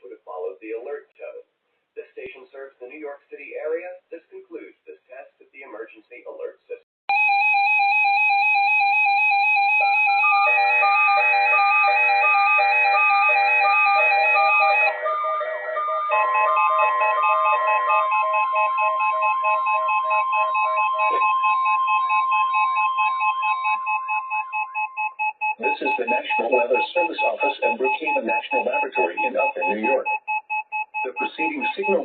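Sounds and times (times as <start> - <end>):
steady warning alarm tone: 7.1 - 32.0
electronic beeping melody: 10.0 - 32.0.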